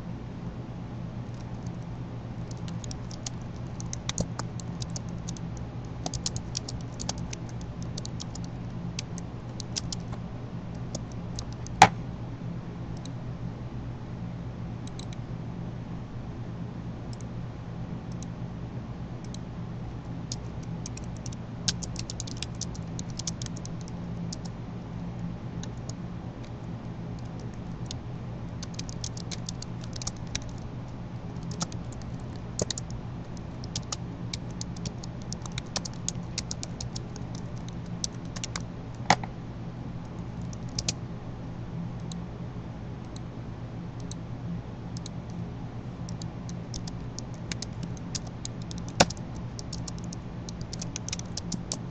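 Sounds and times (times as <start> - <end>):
low electrical hum: 0.0 - 51.9
typing on computer keyboard: 2.5 - 10.1, 20.3 - 24.5, 28.6 - 30.6, 31.4 - 39.2, 40.5 - 41.0, 46.1 - 51.9.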